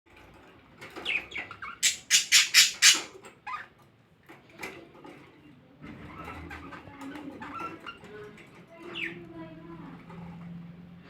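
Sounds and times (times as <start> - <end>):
budgerigars chirping: 1.0 - 3.6
harsh bird squawks: 1.8 - 3.1.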